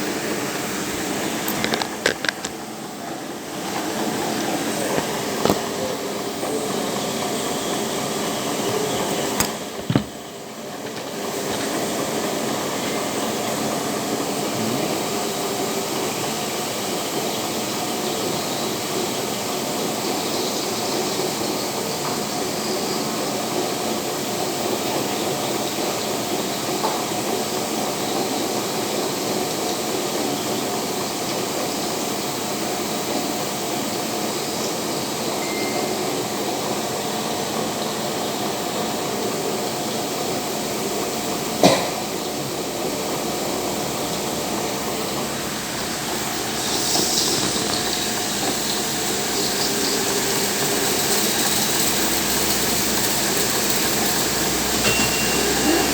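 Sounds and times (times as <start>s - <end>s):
factory machinery running: 35.4s - 55.9s.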